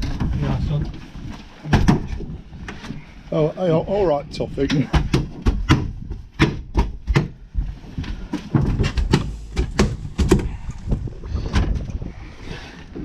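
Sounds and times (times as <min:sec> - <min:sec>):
low rumble: 0:09.3 - 0:13.0.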